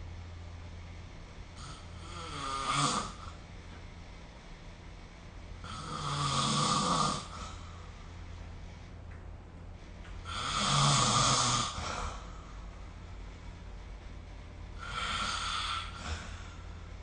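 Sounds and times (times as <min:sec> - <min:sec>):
steady low hum: 0:00.0 - 0:17.0
person snoring: 0:01.6 - 0:03.4, 0:05.6 - 0:07.6, 0:10.2 - 0:12.4, 0:14.8 - 0:16.6.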